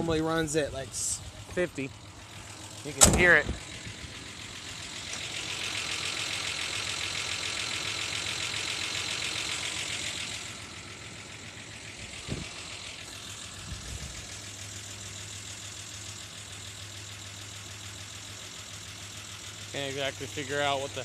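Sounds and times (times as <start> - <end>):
engine idling with ticking: 0.0 - 21.0
short thumps: 3.0 - 3.8.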